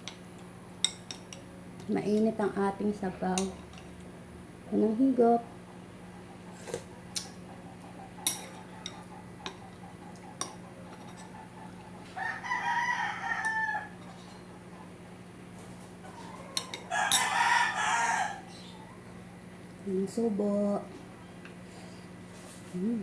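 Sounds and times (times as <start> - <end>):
rooster crowing: 12.0 - 14.0, 16.0 - 18.6.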